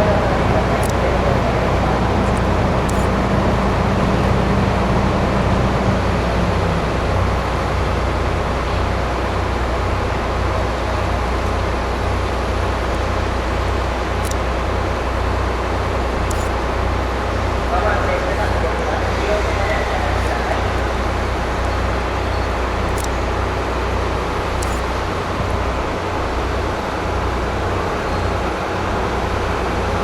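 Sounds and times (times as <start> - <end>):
electric train hum and rumble: 0.0 - 30.0.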